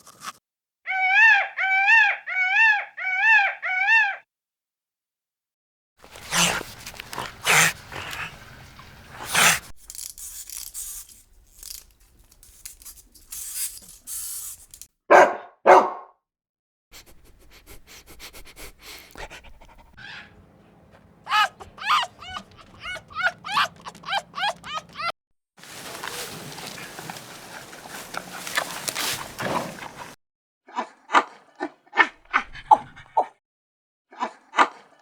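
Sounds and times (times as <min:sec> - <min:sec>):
dog yipping: 0:06.1 - 0:08.4, 0:09.1 - 0:09.7, 0:19.2 - 0:25.1
dog barking and whimpering: 0:06.1 - 0:09.7, 0:15.1 - 0:16.0, 0:18.8 - 0:25.1.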